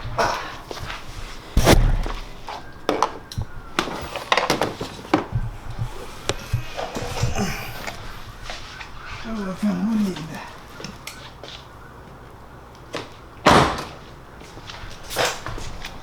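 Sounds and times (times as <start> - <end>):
heavy thump: 1.6 - 2.6.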